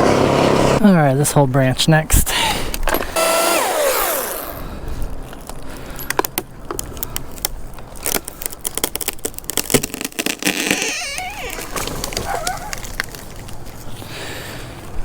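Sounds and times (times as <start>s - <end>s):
twigs and branches snapping: 5.3s - 14.7s.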